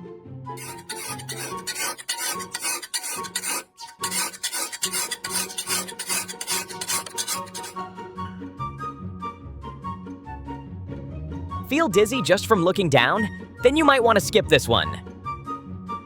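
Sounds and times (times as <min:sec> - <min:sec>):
tool scraping hard surface: 0:00.6 - 0:07.8.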